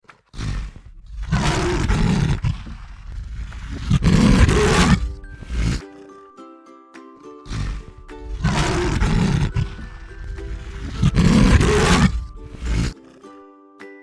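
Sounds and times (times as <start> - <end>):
lion roaring: 0.4 - 5.8, 7.5 - 13.0
chiming musical jingle: 5.2 - 7.4, 9.6 - 11.0.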